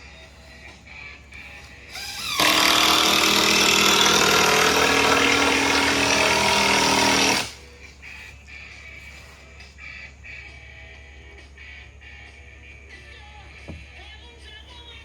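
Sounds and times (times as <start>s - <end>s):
motorized machine running: 1.9s - 7.6s.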